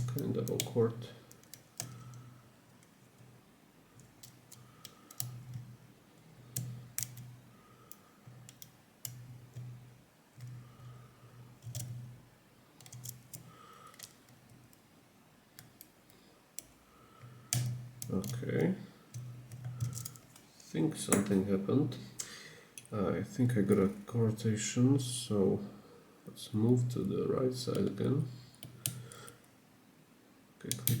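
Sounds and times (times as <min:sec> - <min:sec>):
lock pick clicking: 0:06.6 - 0:07.3, 0:17.5 - 0:17.8, 0:19.1 - 0:20.4.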